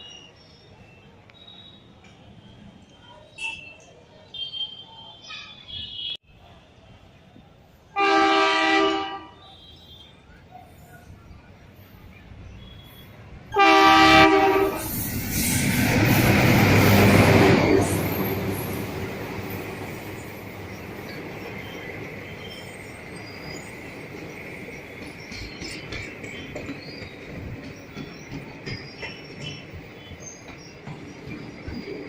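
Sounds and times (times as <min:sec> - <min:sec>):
wheels squealing on rails: 0:00.0 - 0:32.0
train horn: 0:08.0 - 0:10.1, 0:13.5 - 0:14.9
train cars rumbling: 0:10.2 - 0:32.0.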